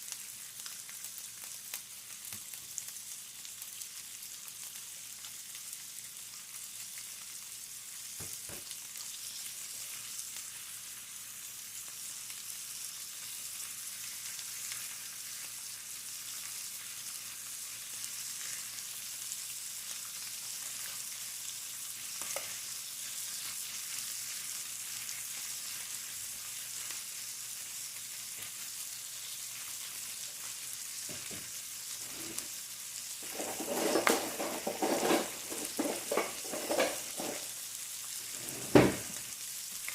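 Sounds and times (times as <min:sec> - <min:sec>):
food sizzling in frying pan: 0:00.0 - 0:39.9
stirring and clatter: 0:33.2 - 0:37.5
utensil knocks: 0:33.3 - 0:37.4.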